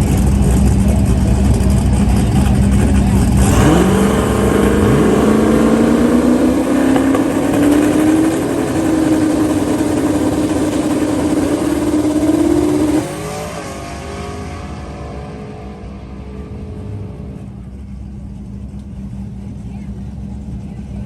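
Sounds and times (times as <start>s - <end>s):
drag car engine running hard: 0.0s - 21.0s.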